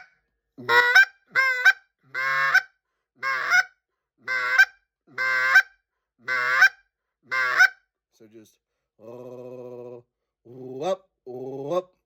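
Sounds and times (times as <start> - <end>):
goose call honks: 0.0 - 3.7.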